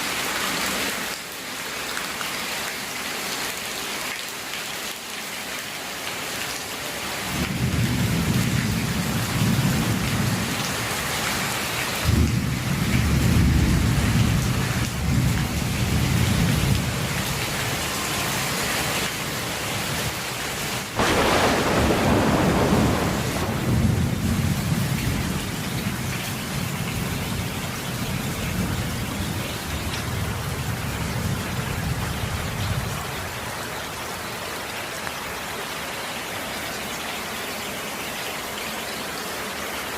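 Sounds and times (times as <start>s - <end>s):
steady rain: 0.0s - 39.9s
thunder rumbling: 12.0s - 17.5s, 20.9s - 33.0s.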